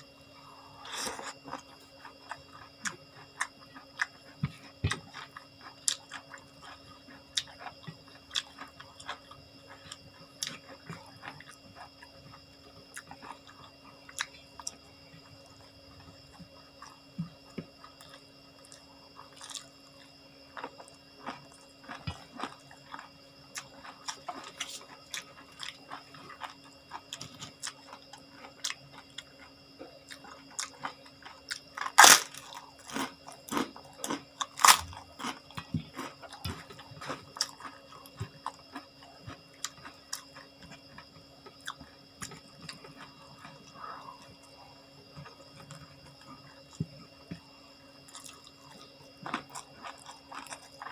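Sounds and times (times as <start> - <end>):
chewing crunchy food: 0.0 - 50.9
faint steady hum: 0.0 - 50.9
loud crunching bites: 30.1 - 40.4, 48.1 - 50.9.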